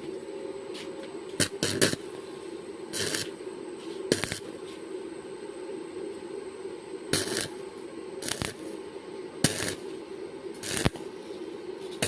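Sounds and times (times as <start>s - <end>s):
steady low hum: 0.0s - 12.0s
sharp metallic welding bursts: 1.4s - 2.0s, 2.9s - 3.3s, 4.1s - 4.4s, 7.1s - 7.6s, 8.2s - 8.7s, 9.4s - 9.8s, 10.6s - 11.0s.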